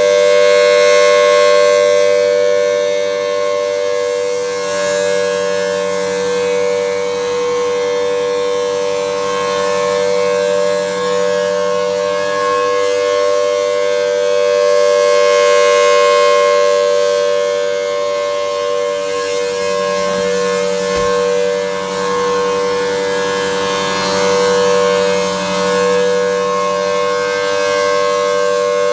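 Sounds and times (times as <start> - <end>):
tornado warning siren: 0.0 - 28.9
short low thump: 20.8 - 21.6.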